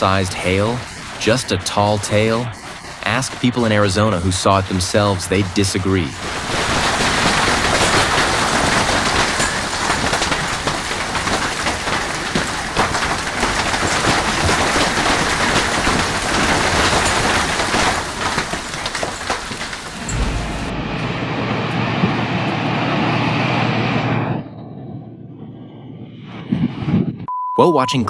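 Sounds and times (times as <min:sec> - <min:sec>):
hailstones cracking on hard surfaces: 0:00.0 - 0:20.8
hail pelting down: 0:00.0 - 0:22.1.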